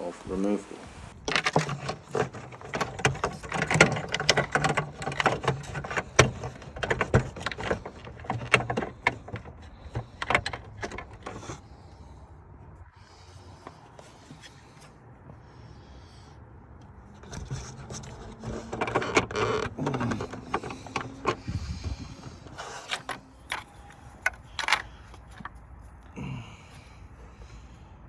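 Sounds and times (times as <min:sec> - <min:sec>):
plastic clicks knocks and scrapes: 0:01.1 - 0:11.7, 0:17.2 - 0:25.7.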